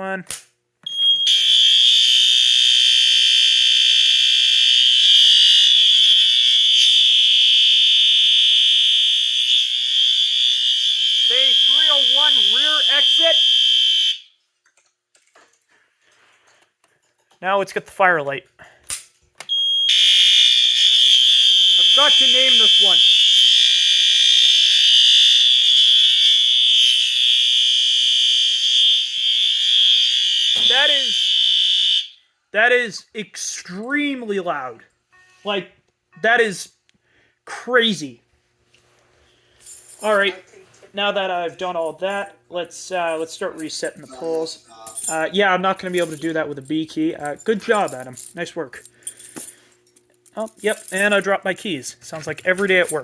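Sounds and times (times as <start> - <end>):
fire alarm horn high-pitched tone: 0.8 - 14.4, 19.5 - 32.4.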